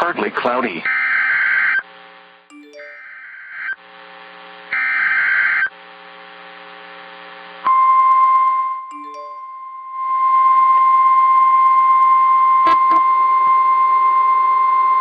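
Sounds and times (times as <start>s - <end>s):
steady attention tone: 2.5s - 3.6s, 8.9s - 10.2s.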